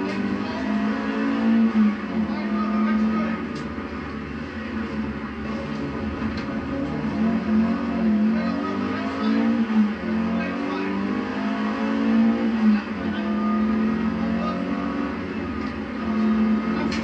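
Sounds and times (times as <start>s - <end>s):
car engine accelerating: 0.0s - 17.0s.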